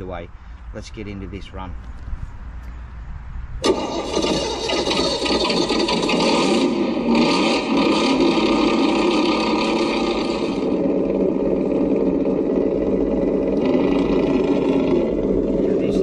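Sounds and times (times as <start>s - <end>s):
wind buffeting microphone: 0.0s - 5.8s
rc car motor whining: 3.6s - 16.0s.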